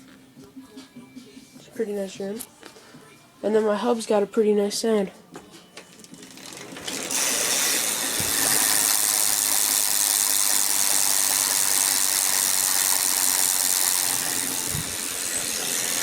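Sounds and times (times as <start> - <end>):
bicycle hub freewheel buzzing: 6.1 - 16.0.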